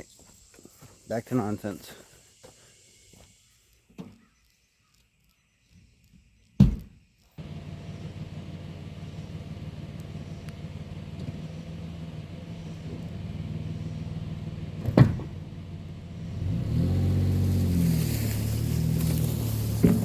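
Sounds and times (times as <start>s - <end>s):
vehicle engine starting and running: 7.4s - 20.0s
loud thump: 14.8s - 15.4s.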